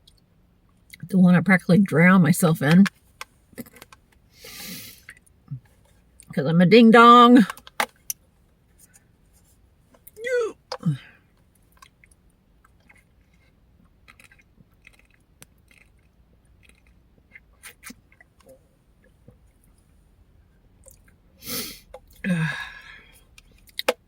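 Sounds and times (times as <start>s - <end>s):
faint chewing: 10.0s - 20.0s, 20.8s - 21.2s
breathy vocal bursts: 21.4s - 23.2s.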